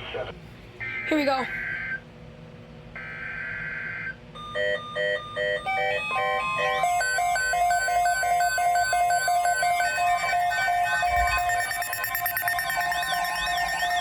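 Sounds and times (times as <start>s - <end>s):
fast repeating electronic beeps: 6.8s - 14.0s
harsh digital buzzing burst: 9.8s - 14.0s.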